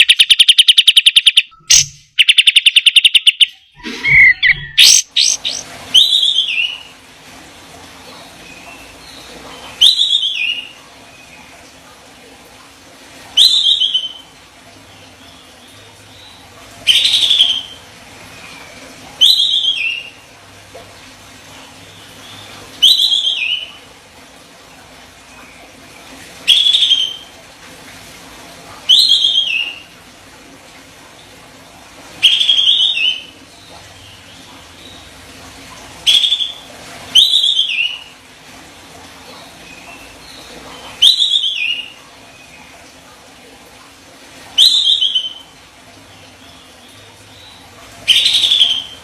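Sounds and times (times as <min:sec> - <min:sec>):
bird giving sharp high calls: 0:00.0 - 0:06.1.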